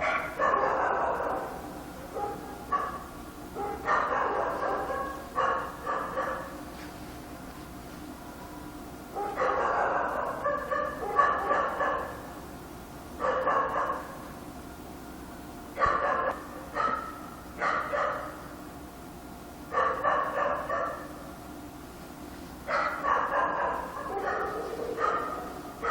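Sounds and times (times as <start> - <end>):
dog barking: 0.0 - 6.6, 9.1 - 12.3, 13.2 - 14.3, 15.8 - 18.5, 19.7 - 21.2, 22.6 - 25.9
faint steady hum: 0.0 - 25.9.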